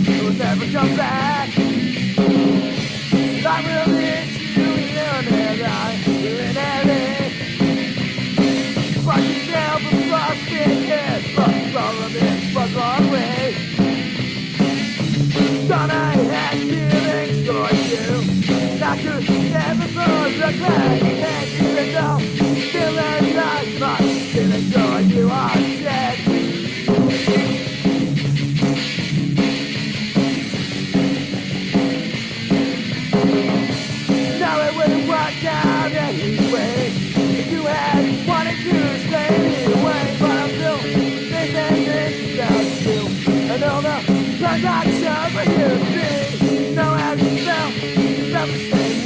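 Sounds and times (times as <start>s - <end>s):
person singing: 0.0s - 1.8s, 3.2s - 7.7s, 9.0s - 13.8s, 15.4s - 26.6s, 34.0s - 49.0s
bass guitar: 0.0s - 49.0s
drums: 0.0s - 49.0s
electric guitar: 0.0s - 49.0s
punk rock band playing: 0.0s - 49.0s.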